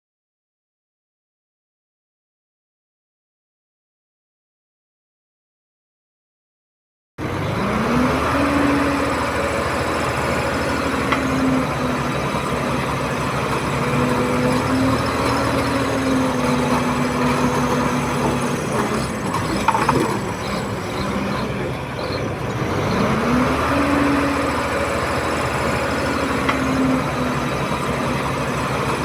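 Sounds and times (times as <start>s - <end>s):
bulldozer diesel engine under load: 7.2s - 29.0s.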